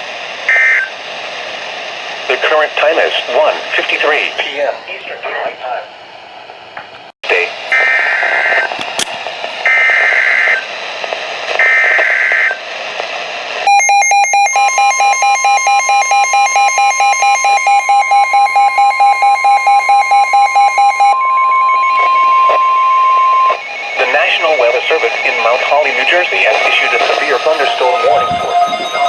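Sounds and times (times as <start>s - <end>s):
steady warning alarm tone: 0.5s - 0.9s, 9.6s - 10.6s, 11.6s - 12.6s, 13.7s - 29.0s
digital data tone bursts: 13.7s - 29.0s.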